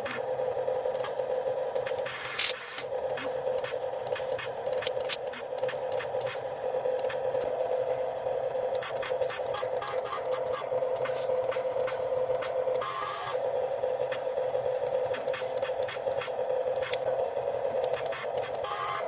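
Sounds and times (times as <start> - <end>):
toy car electric motor whine: 0.0 - 19.0.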